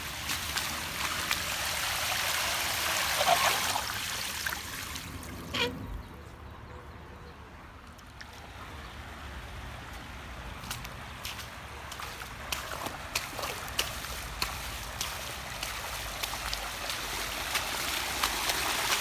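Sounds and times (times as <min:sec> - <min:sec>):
water rushing from a valve: 0:00.0 - 0:05.9, 0:12.0 - 0:19.0
water trickling: 0:00.0 - 0:06.3, 0:08.6 - 0:19.0.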